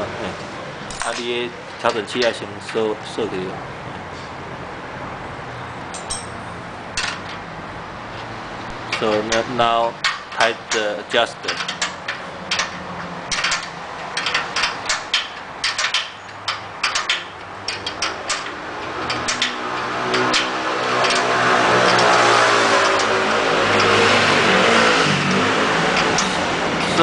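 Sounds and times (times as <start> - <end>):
passing vehicle engine: 3.5 - 27.0
ratchet wrench clicking: 8.8 - 26.4.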